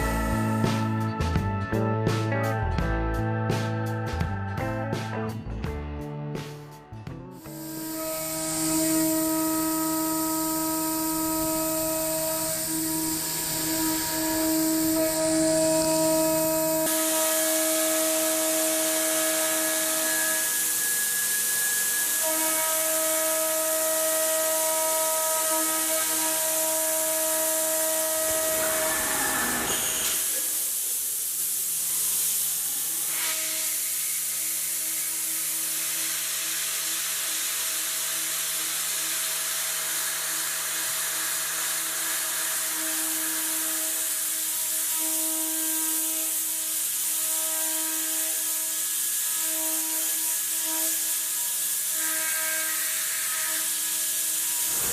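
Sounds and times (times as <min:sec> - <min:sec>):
milling machine spindle whine: 0:07.4 - 0:30.9, 0:33.7 - 0:54.9
coolant spray hiss: 0:28.2 - 0:41.0.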